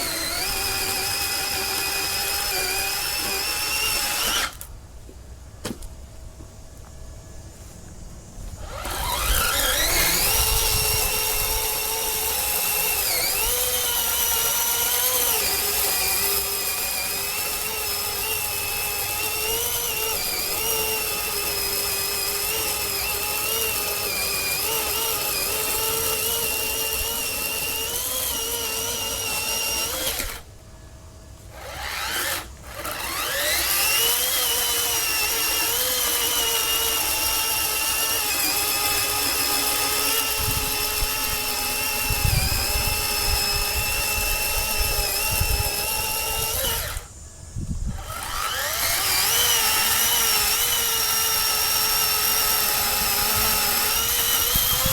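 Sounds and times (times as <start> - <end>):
electric chainsaw motor whining: 0.0 - 4.8, 8.5 - 30.6, 31.4 - 54.9.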